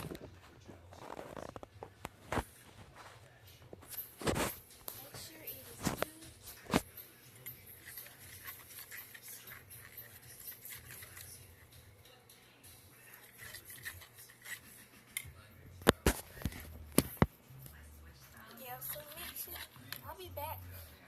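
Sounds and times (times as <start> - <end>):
utensil scraping in bowl: 4.2 - 11.7, 12.9 - 15.4, 18.4 - 20.8.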